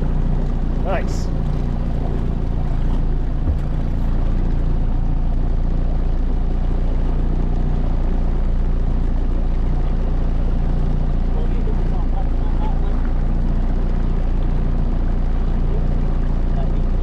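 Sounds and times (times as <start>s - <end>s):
motorboat engine droning: 0.0s - 17.0s
low bump: 1.6s - 5.0s.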